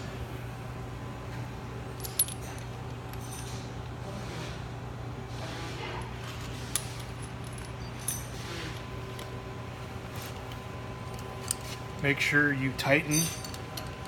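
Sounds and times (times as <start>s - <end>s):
shop machinery hum: 0.0s - 14.0s
metal tools clinking: 2.0s - 3.7s, 6.6s - 9.3s, 12.8s - 14.0s.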